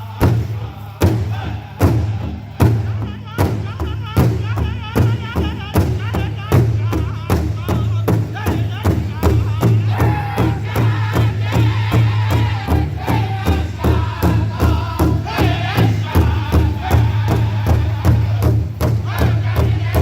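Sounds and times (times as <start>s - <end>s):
steady quick drumbeat: 0.0s - 20.0s
high wavering chanted voices: 9.9s - 20.0s.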